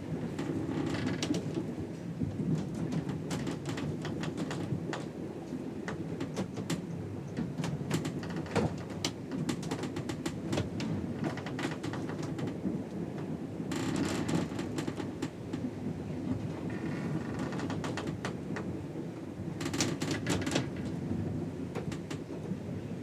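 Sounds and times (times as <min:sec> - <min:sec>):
ship creaks clicks and knocks: 0:00.2 - 0:22.9.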